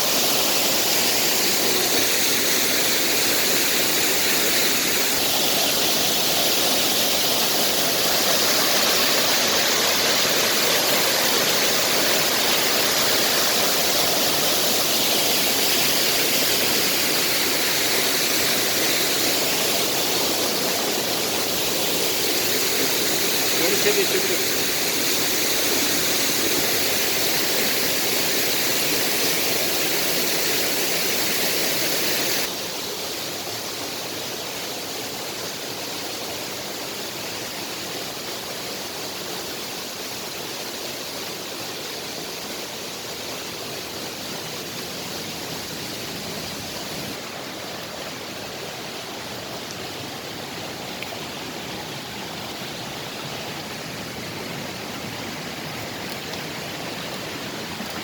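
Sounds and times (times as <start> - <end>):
waterfall rushing water: 0.0 - 58.0.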